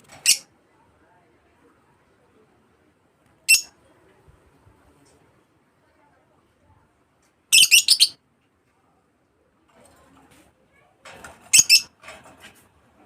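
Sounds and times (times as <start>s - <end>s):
birds chirping rapidly: 7.6s - 8.2s.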